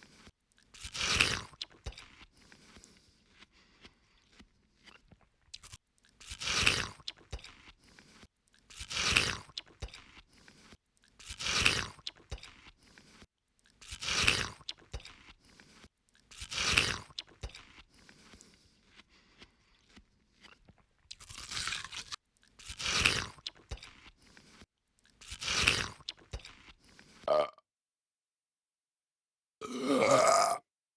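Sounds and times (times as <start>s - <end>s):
chewing clicks: 0.0s - 27.2s
ape crunching food: 0.0s - 27.3s.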